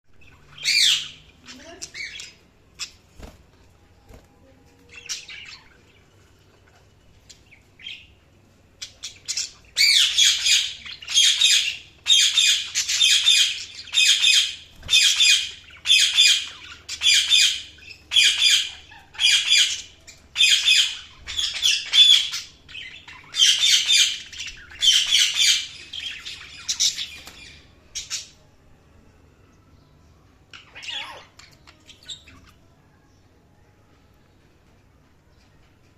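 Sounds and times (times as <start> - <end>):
budgerigar chirping and squawking: 0.6 - 2.9, 9.0 - 27.2, 30.6 - 31.6.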